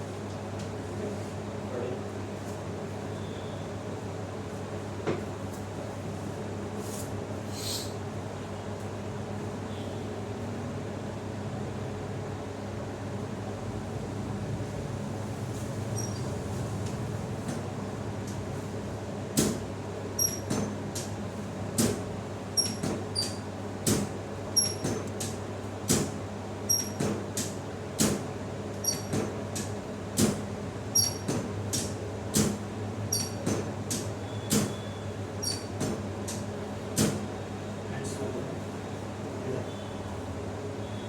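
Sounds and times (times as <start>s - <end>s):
sharp taps with squeaks: 16.0s - 16.3s, 20.2s - 20.7s, 22.6s - 23.4s, 24.6s - 25.3s, 26.7s - 27.2s, 28.8s - 29.7s, 31.0s - 31.9s, 33.1s - 36.4s.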